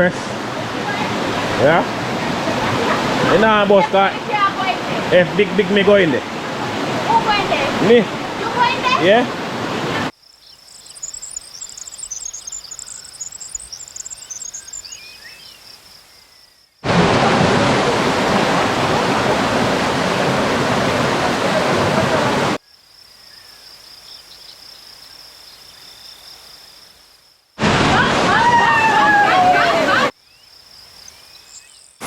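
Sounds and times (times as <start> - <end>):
insects chirping: 2.0 - 16.8, 22.6 - 27.6, 30.1 - 32.0
loud even rushing noise: 16.8 - 22.6.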